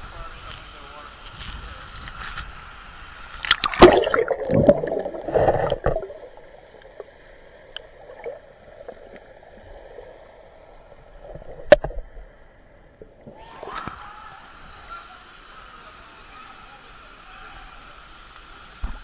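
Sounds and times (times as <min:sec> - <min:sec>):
water splashing and sloshing: 0:03.3 - 0:12.3.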